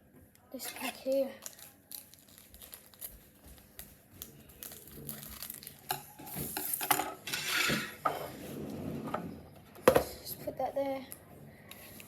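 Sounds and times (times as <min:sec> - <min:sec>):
foil pack crinkling and rustling: 0:00.6 - 0:06.8.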